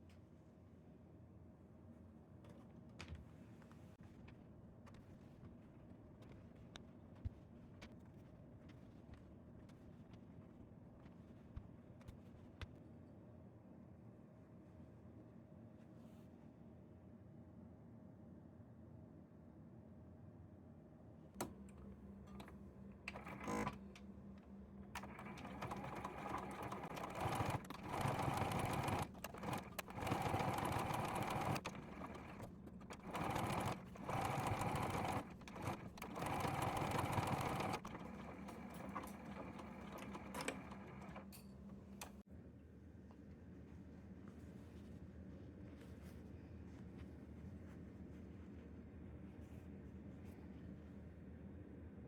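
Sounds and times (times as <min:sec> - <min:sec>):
electric sewing machine stitching: 0:23.1 - 0:23.8, 0:25.0 - 0:41.3.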